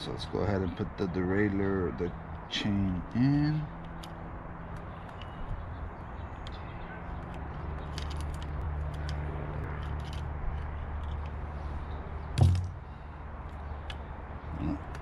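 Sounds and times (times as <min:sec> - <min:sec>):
bicycle chain clicking and rattling: 0:07.8 - 0:11.3.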